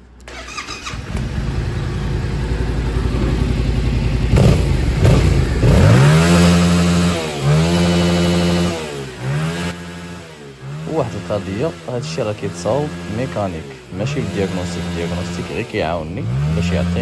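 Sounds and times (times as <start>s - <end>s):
motorcycle engine revving: 0.2s - 17.0s.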